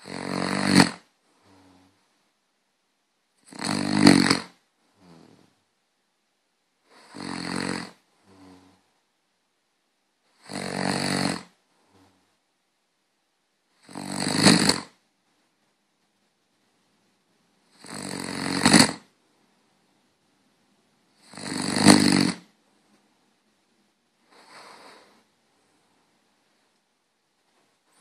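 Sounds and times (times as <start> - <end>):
person snoring: 0.0 - 2.0, 3.4 - 5.6, 6.9 - 8.9, 10.4 - 12.2, 13.8 - 15.0, 17.7 - 19.1, 21.2 - 22.5, 24.3 - 25.3.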